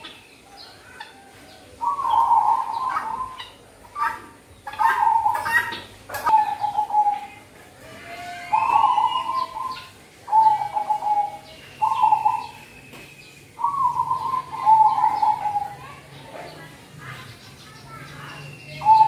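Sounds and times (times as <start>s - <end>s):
dove cooing: 0.0s - 7.4s, 8.5s - 12.6s, 13.6s - 15.9s, 18.8s - 19.0s
small birds chirping: 0.0s - 19.0s.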